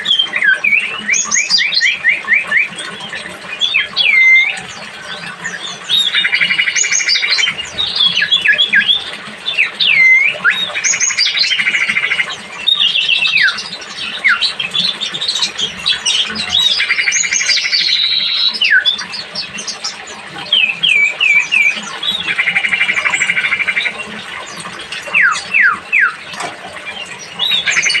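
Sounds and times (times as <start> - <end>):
songbird singing whistled notes: 0.0 - 2.8, 3.6 - 4.6, 5.6 - 15.0, 15.6 - 19.8, 20.4 - 22.3, 25.1 - 26.2
fast buzzy bird trill: 0.0 - 26.2.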